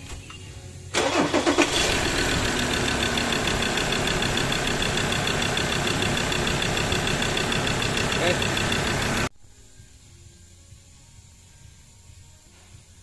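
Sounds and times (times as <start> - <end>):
diesel engine cranking and idling: 0.9 - 9.3.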